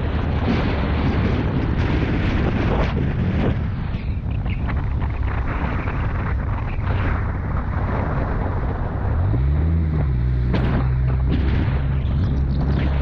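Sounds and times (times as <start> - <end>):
wind buffeting microphone: 0.0 - 13.0
off-road vehicle engine revving: 4.3 - 13.0.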